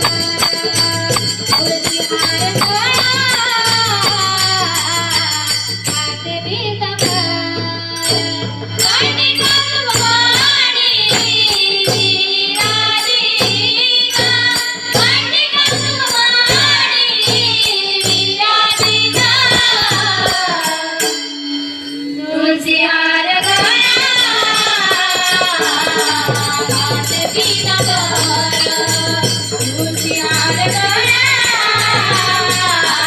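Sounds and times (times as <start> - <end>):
drum strokes: 0.0 - 6.1, 11.1 - 12.3, 17.3 - 20.8, 23.4 - 33.0
jingling hand percussion: 0.0 - 33.0
person singing devotional song: 0.0 - 33.0.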